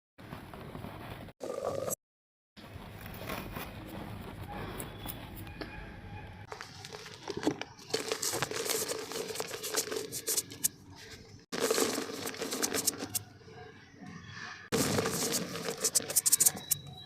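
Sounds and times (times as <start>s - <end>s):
dry mud crunching in a pot: 6.5s - 13.2s, 14.7s - 16.8s.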